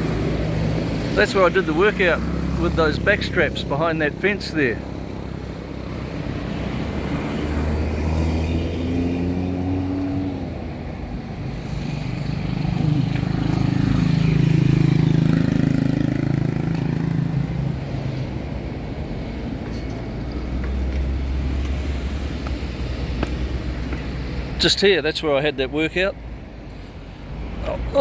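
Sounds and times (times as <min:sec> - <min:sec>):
vehicle passing by: 0:00.0 - 0:18.9
car engines on street: 0:00.0 - 0:28.0.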